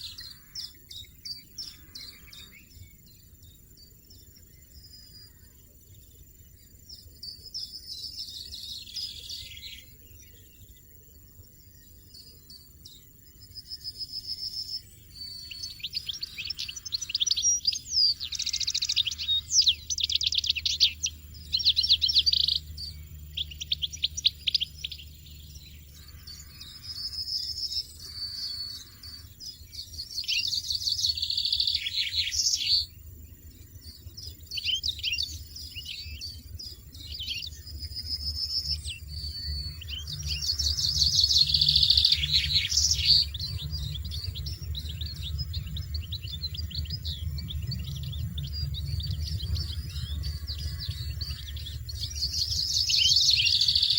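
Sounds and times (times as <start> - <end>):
finches twittering and trilling: 0.0 - 6.3, 7.0 - 53.9
faint low rumble: 35.5 - 53.9.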